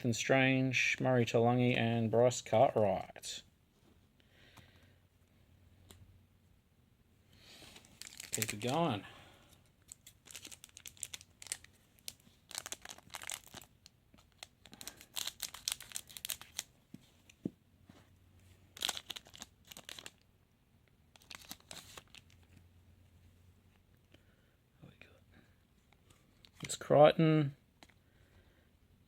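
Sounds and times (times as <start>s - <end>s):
card packet wrapper tearing and crinkling: 7.8s - 9.0s, 9.8s - 16.8s, 18.7s - 20.2s, 21.1s - 22.5s.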